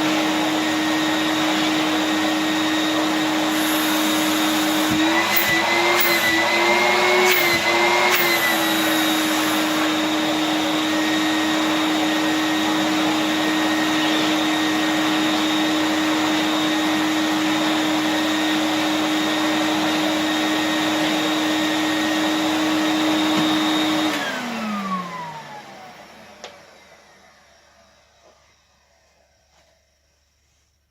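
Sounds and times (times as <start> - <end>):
vacuum cleaner running: 0.0 - 30.6
motor winding down: 3.5 - 9.7.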